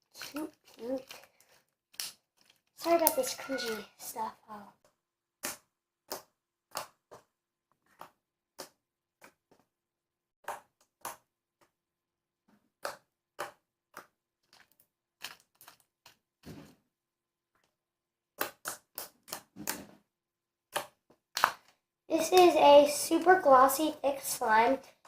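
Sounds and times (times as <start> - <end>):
slime clicking and popping: 5.4 - 7.3, 12.8 - 16.2, 18.4 - 19.9, 20.7 - 21.7.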